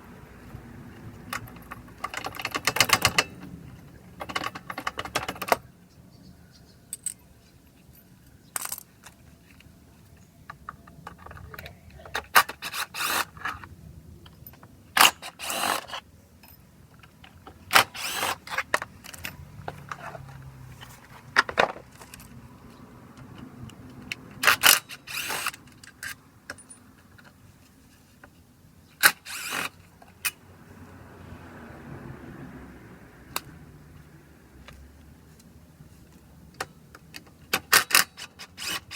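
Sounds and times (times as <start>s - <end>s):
tools and metal parts clinking: 1.2s - 5.7s, 6.9s - 27.4s.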